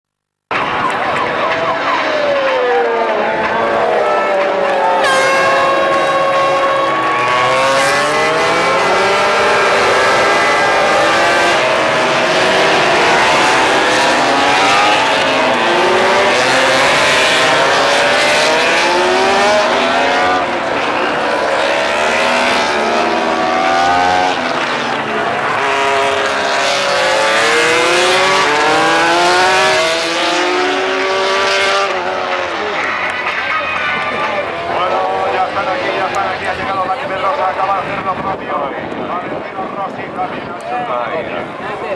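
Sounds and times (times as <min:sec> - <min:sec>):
racing motorcycle engines passing: 0:00.6 - 0:41.8.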